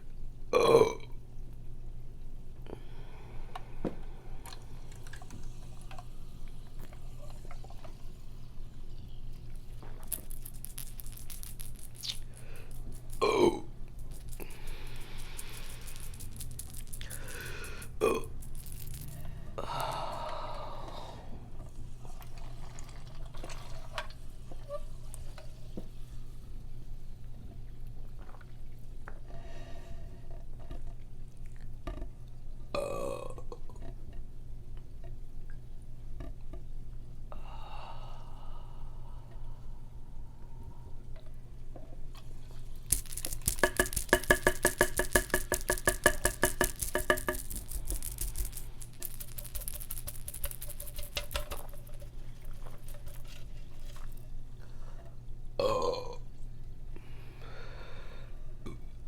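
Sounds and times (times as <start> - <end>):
woman burping: 0.5 - 1.1, 13.2 - 13.7, 18.0 - 18.3, 55.6 - 56.2.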